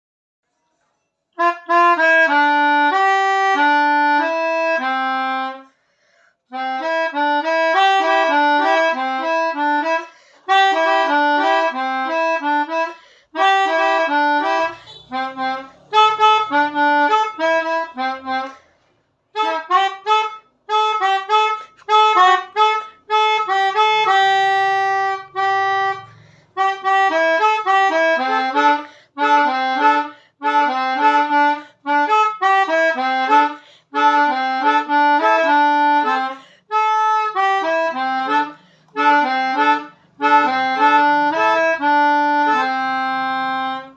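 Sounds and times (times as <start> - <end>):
harmonica playing two-note chords: 1.4 - 5.7, 6.5 - 18.6, 19.3 - 43.9.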